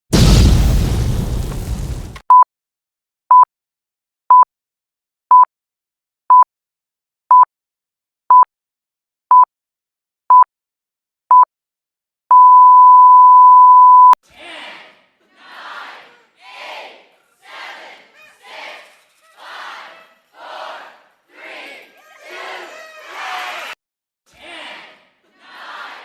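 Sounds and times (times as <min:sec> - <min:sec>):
explosion sound effect: 0:00.0 - 0:02.2.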